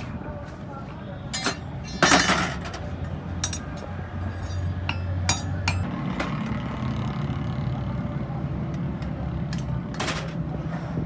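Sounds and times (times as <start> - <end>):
hammer striking metal anvil: 4.4 - 5.9.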